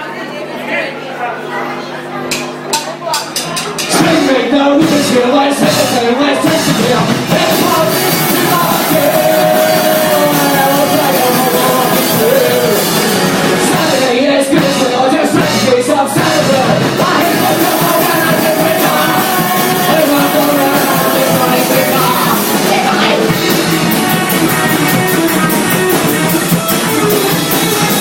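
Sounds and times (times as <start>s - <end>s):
rock band playing blues: 2.4s - 28.0s
person singing: 3.9s - 24.3s.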